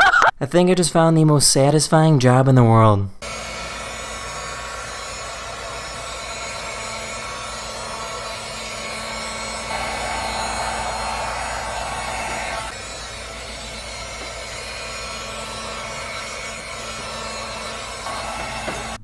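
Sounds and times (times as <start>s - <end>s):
machine humming: 3.2s - 19.0s.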